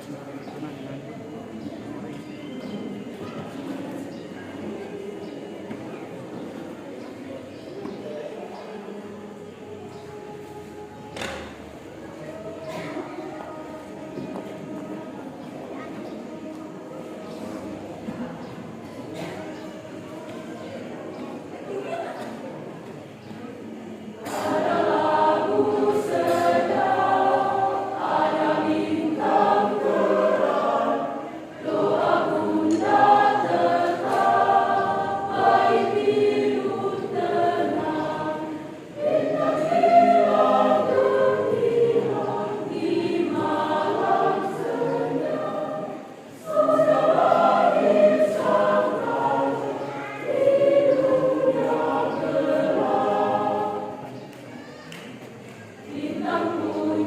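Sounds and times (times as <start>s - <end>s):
church choir singing a hymn: 0.0s - 57.0s.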